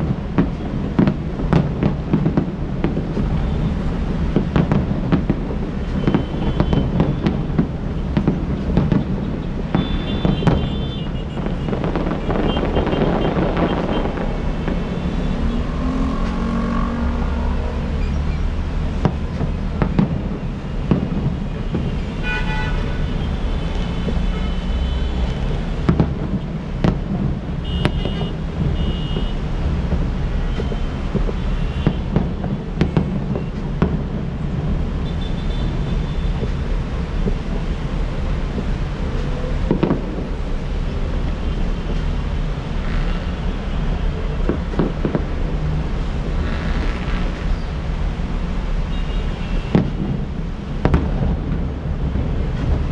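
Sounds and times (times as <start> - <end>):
fireworks popping: 0.0 - 17.2, 17.8 - 52.9
city traffic rumble: 0.0 - 52.9
car horn toots: 22.1 - 25.8.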